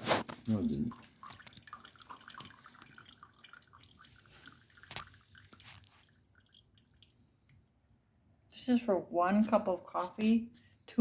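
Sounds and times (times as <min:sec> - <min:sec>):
coffee maker crackling and ticking: 0:00.0 - 0:07.6.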